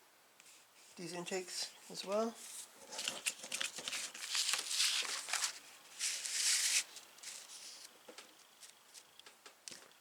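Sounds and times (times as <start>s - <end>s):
paper rustling: 2.4s - 9.3s.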